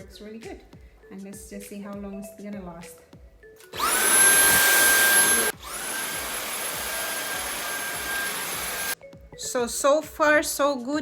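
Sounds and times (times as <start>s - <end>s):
cordless vacuum motor whining: 3.8s - 9.0s.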